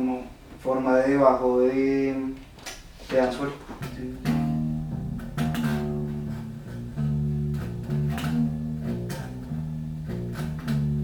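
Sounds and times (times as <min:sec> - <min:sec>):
low metal guitar riff: 0:03.8 - 0:11.0.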